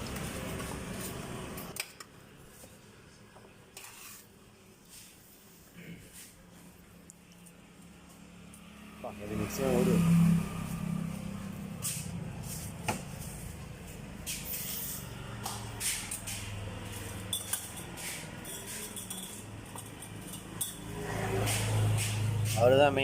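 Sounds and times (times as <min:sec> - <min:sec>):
light clinks and knocks: 0:16.1 - 0:20.9.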